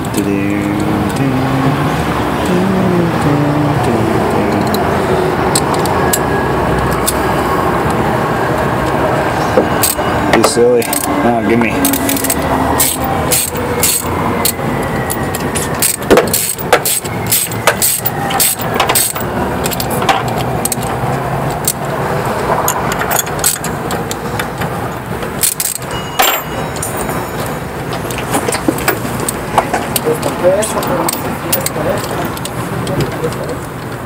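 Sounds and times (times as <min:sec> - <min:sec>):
low engine rumble: 0:00.0 - 0:34.0
clicks and knocks of tools: 0:09.6 - 0:11.1, 0:11.8 - 0:34.0.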